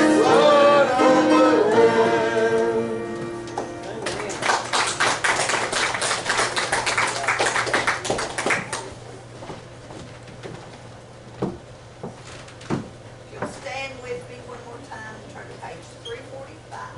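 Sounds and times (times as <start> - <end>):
people clapping: 3.5 - 9.0.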